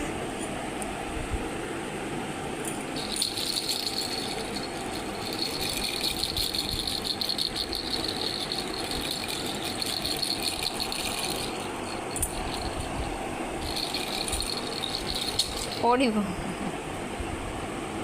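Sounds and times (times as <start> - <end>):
fine rattling ticks: 3.0 - 16.0.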